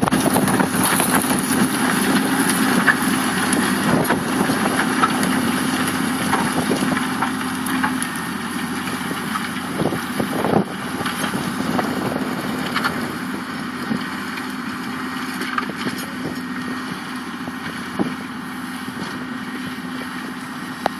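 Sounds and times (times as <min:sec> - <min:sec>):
tractor diesel engine running: 0:00.0 - 0:20.9
wind on microphone: 0:09.6 - 0:15.1.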